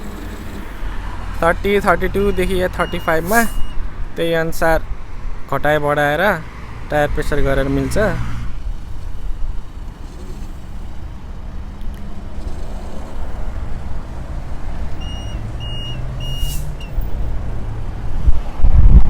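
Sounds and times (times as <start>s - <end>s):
vehicles rumbling: 0.0s - 19.0s
short high electronic beeps: 2.8s - 3.8s
brief hiss: 3.2s - 3.7s, 16.3s - 16.8s.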